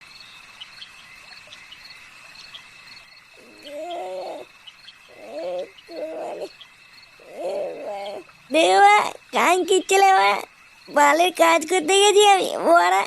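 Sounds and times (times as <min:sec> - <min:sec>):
faint chirps: 0:00.0 - 0:13.0
high cricket trill: 0:00.0 - 0:13.0.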